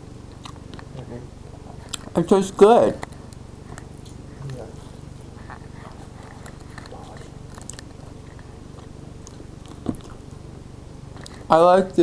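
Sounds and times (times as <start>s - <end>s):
steady low hum: 0.0s - 12.0s
person chewing: 0.3s - 0.9s, 1.5s - 2.2s, 3.0s - 10.4s, 11.1s - 11.5s.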